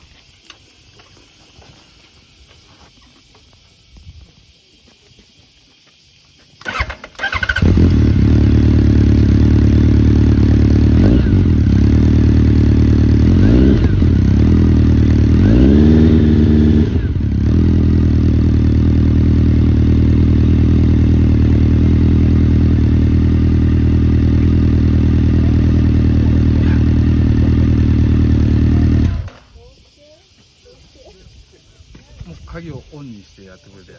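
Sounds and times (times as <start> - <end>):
motorcycle starter cranking: 6.6 - 15.4, 26.8 - 29.6
motorcycle engine revving: 6.6 - 29.6
motorcycle engine idling: 6.6 - 29.7.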